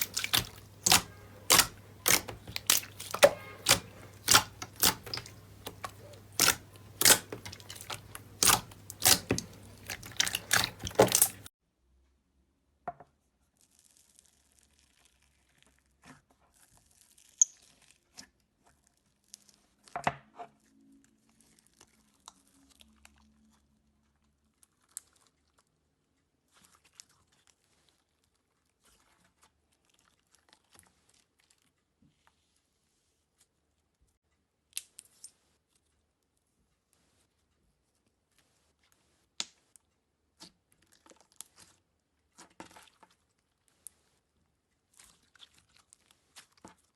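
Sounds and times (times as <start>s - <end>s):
short crinkly sounds: 0.0s - 11.5s
slime squeezed with crackling clicks: 0.0s - 11.5s.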